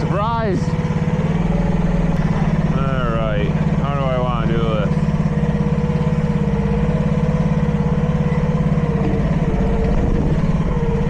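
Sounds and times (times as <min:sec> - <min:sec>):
excavator engine running: 0:00.0 - 0:11.0
steady whine: 0:08.2 - 0:11.0.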